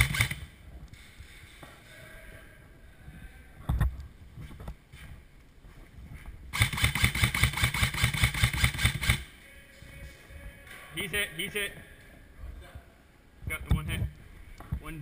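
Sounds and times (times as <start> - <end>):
airsoft rifle firing full auto: 0.0 - 0.5, 6.6 - 9.3.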